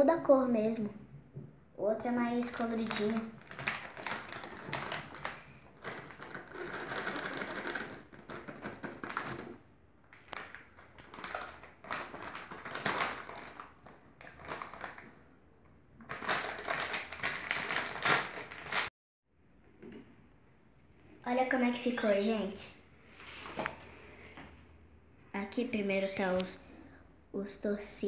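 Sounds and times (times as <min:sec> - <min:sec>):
plastic packaging crinkling: 0:02.5 - 0:15.2, 0:16.0 - 0:18.9.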